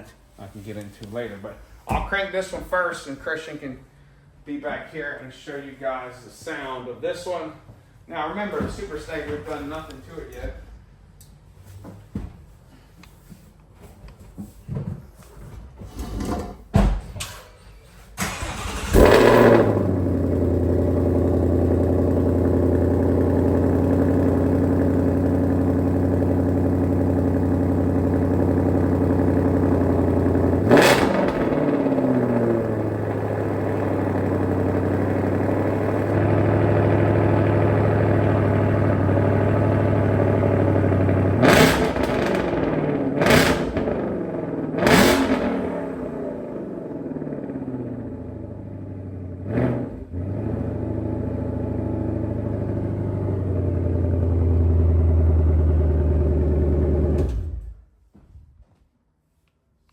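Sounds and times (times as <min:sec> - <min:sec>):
car engine idling: 0:18.2 - 0:49.5, 0:50.2 - 0:57.5
engine revving: 0:18.2 - 0:57.5
car engine starting: 0:18.2 - 0:57.8.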